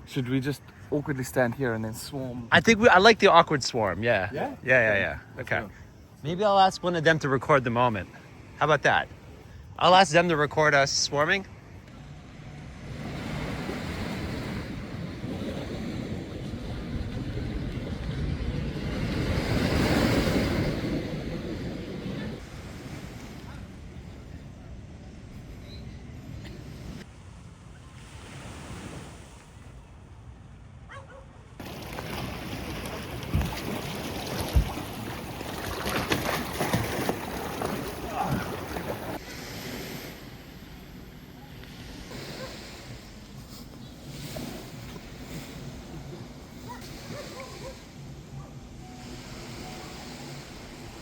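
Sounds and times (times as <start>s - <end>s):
sea noise: 0.0s - 30.3s, 31.6s - 51.0s
water sloshing against boat: 12.8s - 24.2s, 31.6s - 51.0s
wind buffeting microphone: 13.1s - 22.7s
low wind thumps: 31.6s - 35.8s.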